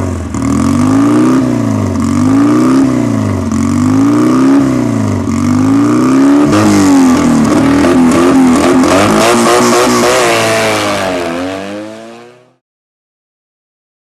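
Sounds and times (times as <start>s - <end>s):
car engine revving: 0.0s - 12.6s.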